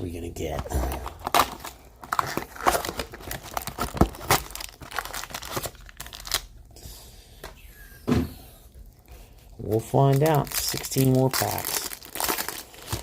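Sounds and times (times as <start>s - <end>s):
wrapper tearing and crinkling: 0.9s - 6.6s, 9.6s - 13.0s.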